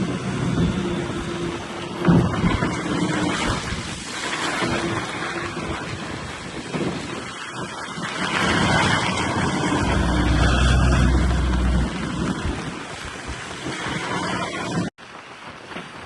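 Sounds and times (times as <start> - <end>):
wind noise on microphone: 0.0 - 16.0
diesel engine running: 9.0 - 12.8.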